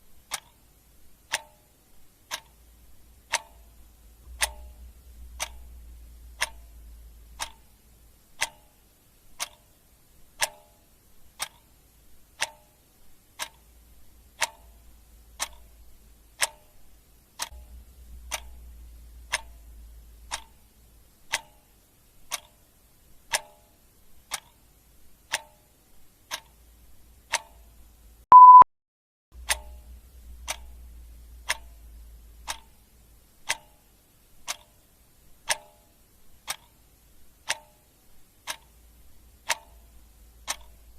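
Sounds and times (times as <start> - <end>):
clock ticking: 0.0 - 28.6, 29.4 - 40.9
short high beep: 28.3 - 28.7.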